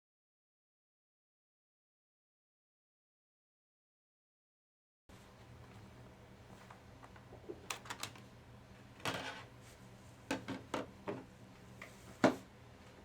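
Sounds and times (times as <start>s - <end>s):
faint steady hum: 5.1s - 13.0s.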